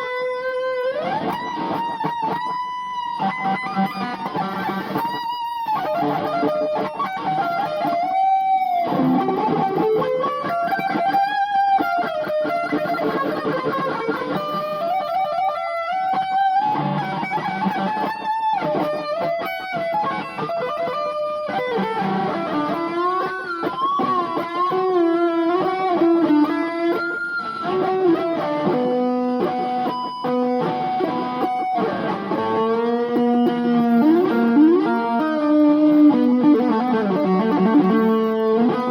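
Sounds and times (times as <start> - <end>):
electric guitar rock solo: 0.0 - 38.9.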